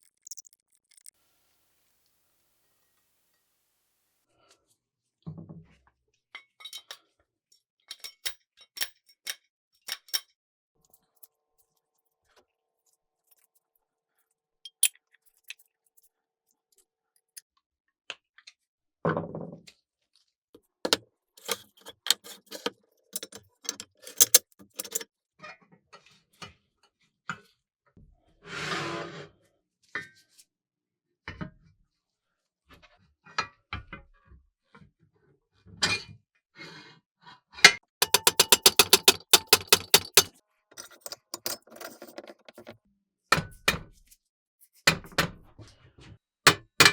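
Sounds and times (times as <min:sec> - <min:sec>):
small metal parts clicking: 0:00.0 - 0:01.2, 0:20.9 - 0:25.0, 0:38.0 - 0:42.7
handling noises: 0:20.9 - 0:25.0, 0:38.0 - 0:42.8.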